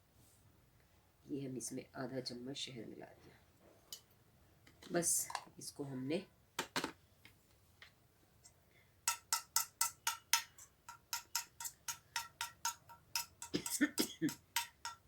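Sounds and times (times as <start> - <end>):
spoon clinking against bowl: 9.1 - 15.0.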